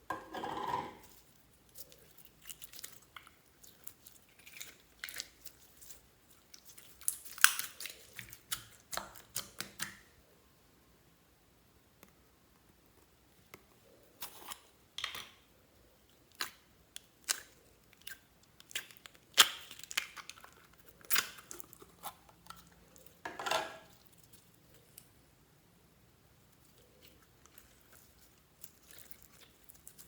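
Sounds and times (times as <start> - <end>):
slime squelching and popping: 1.7 - 10.1.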